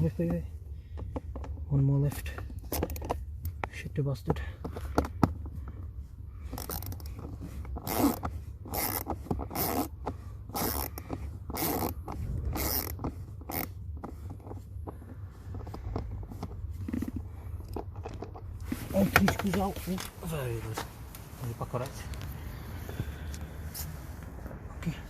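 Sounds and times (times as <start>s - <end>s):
ratcheting screwdriver strokes: 6.5s - 9.9s, 10.5s - 14.6s.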